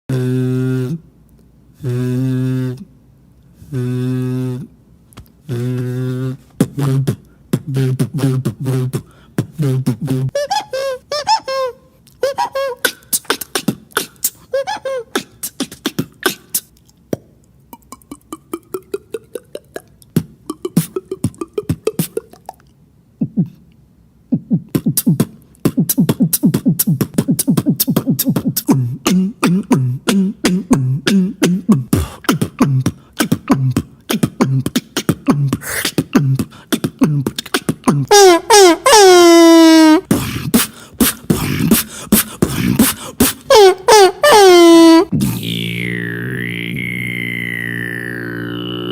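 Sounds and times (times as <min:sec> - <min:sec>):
beatboxing mouth clicks and hits: 0:03.7 - 0:10.4, 0:12.0 - 0:38.1, 0:40.0 - 0:44.3, 0:45.0 - 0:48.9
rising vocal glides: 0:24.3 - 0:38.1, 0:44.9 - 0:48.9
hummed low bass line: 0:45.1 - 0:48.9.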